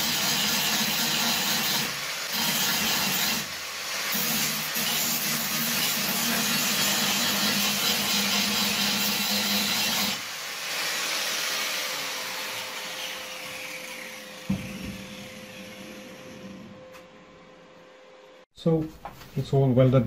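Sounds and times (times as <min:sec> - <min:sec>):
angle grinder on sheet metal: 0:00.0 - 0:16.8
knock: 0:14.5 - 0:15.1.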